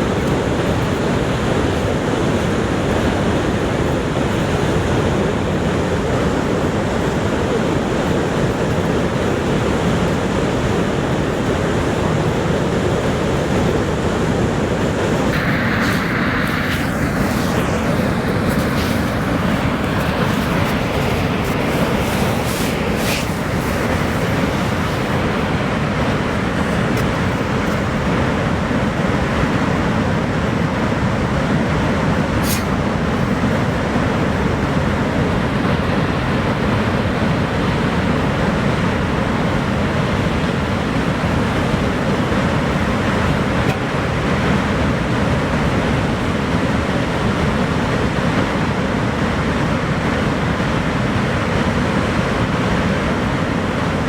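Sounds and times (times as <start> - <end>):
waterfall rushing: 15.3 - 28.2.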